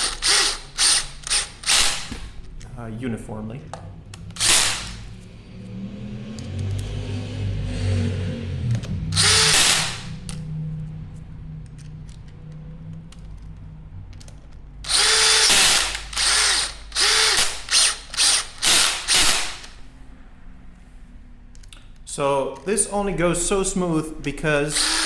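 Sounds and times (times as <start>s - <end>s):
power drill driving screws: 0.0s - 2.3s, 4.4s - 5.2s, 9.1s - 10.4s, 14.8s - 19.8s, 24.7s - 25.0s.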